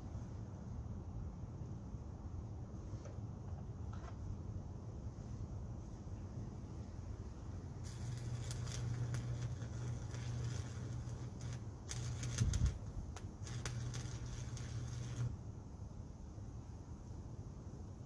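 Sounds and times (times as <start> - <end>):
steady low hum: 0.0 - 18.0
welding arc crackling: 7.8 - 15.4.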